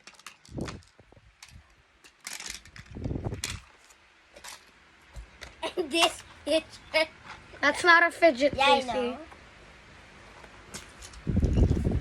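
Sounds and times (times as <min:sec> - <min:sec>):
fidget toys rustling and clattering: 0:00.0 - 0:07.6.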